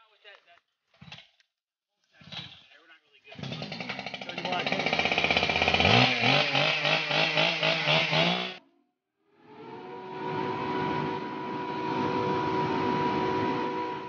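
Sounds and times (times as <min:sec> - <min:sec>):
motor-driven machine revving: 0:03.3 - 0:08.6
machine hum with tones: 0:09.4 - 0:14.0.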